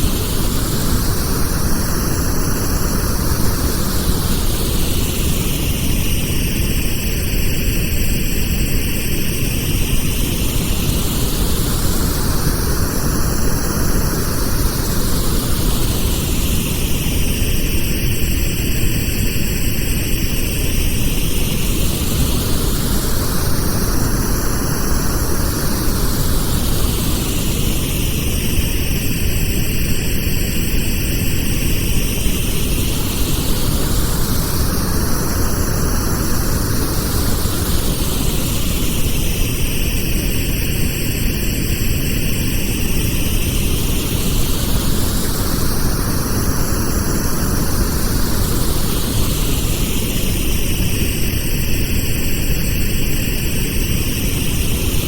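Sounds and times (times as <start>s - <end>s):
pink noise hiss: 0.0s - 55.0s.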